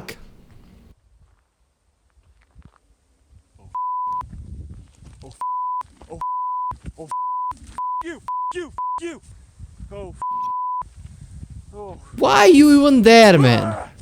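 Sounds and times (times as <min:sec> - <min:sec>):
person shouting: 0:12.2 - 0:13.9.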